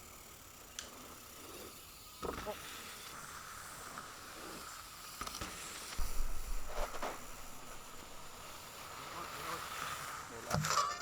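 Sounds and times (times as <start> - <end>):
bike tyres hissing on dirt: 0.0 - 10.8
bike rattling: 4.4 - 11.0.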